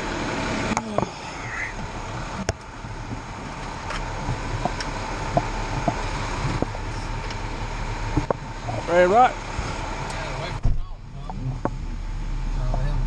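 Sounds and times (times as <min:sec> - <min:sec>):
diesel engine idling: 0:00.0 - 0:13.0
sharp clicks and knocks: 0:01.8 - 0:07.4, 0:08.1 - 0:08.9.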